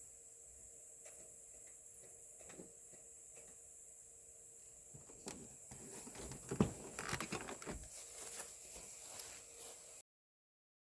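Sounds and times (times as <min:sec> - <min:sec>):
rustling: 0:05.0 - 0:10.0.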